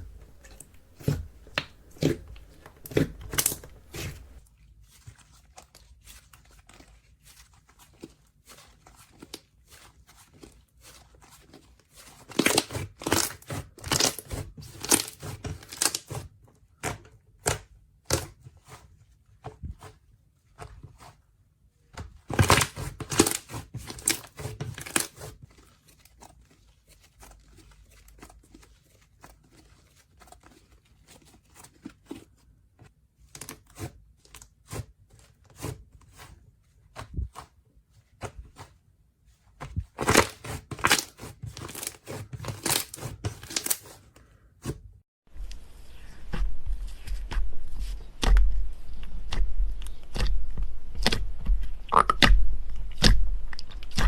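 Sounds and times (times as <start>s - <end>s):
hands squishing slime: 0.0s - 4.4s, 5.0s - 16.3s, 22.0s - 25.4s, 39.5s - 44.0s, 45.6s - 54.0s.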